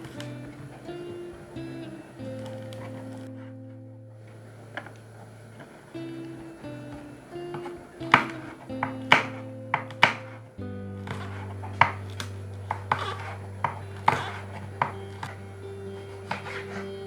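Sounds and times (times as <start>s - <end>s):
background music sustained notes: 0.0s - 17.0s
knife chopping on cutting board: 8.1s - 10.3s, 11.0s - 15.4s.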